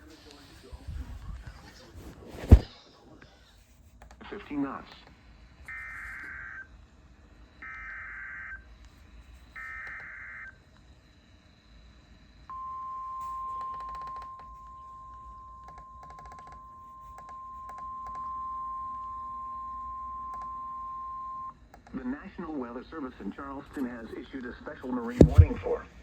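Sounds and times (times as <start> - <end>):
long continuous alarm beep: 5.6 - 21.7.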